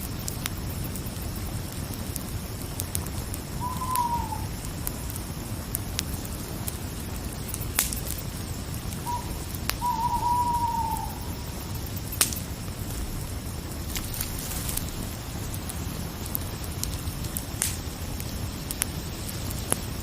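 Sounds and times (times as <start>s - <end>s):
campfire crackling and popping: 0.0s - 20.0s
owl hooting: 3.5s - 4.6s, 9.0s - 11.6s.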